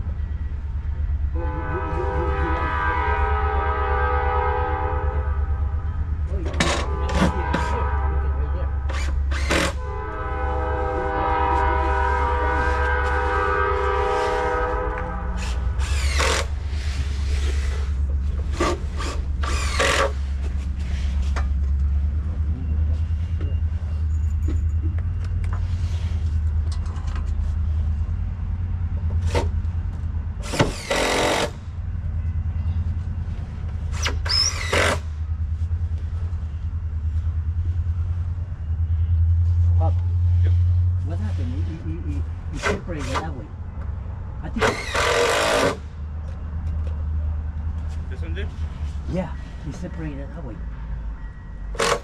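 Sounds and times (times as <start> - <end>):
low rumble: 0.0 - 30.5, 35.0 - 42.6
train horn chord: 1.3 - 5.9, 6.6 - 15.8.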